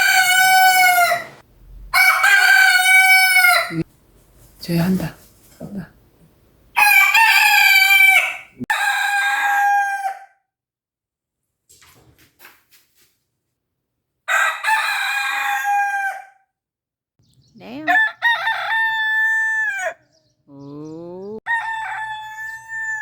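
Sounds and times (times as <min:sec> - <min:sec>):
rooster crowing: 0:00.0 - 0:03.9, 0:06.8 - 0:10.4, 0:14.3 - 0:16.4, 0:17.8 - 0:20.2, 0:21.4 - 0:23.0.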